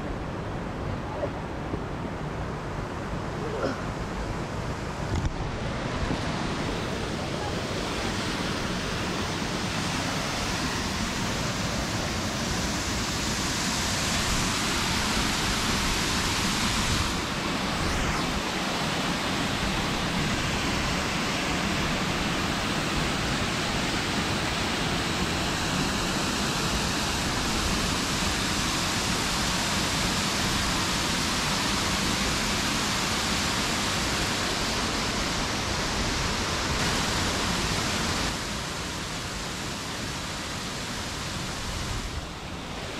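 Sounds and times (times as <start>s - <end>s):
waterfall rushing: 3.2s - 42.9s.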